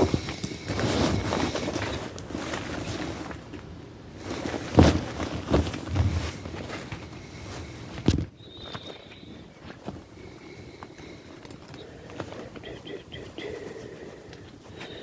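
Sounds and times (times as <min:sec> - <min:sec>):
rustling of gear: 0:00.0 - 0:10.1.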